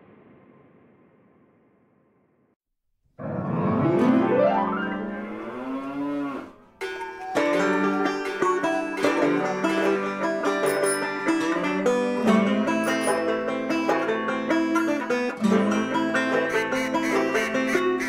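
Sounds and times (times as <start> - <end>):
plucked-string music: 3.4 - 5.2, 6.8 - 18.0
cow mooing: 4.9 - 6.6.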